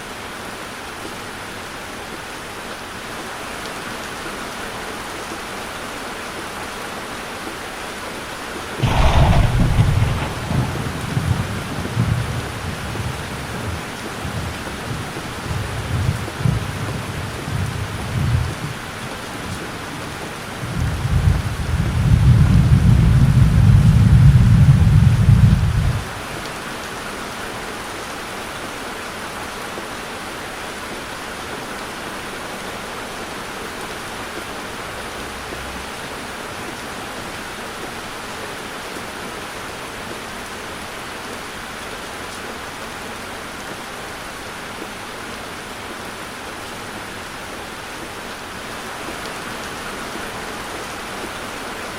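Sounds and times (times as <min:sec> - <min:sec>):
heavy rain on a car: 0:00.0 - 0:51.9
loud low rumble: 0:08.8 - 0:12.6.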